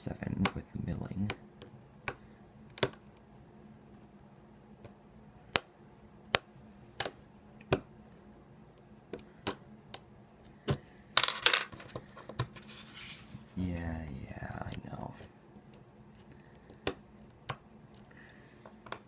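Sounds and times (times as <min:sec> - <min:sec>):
scraping rustle: 0:11.8 - 0:13.6.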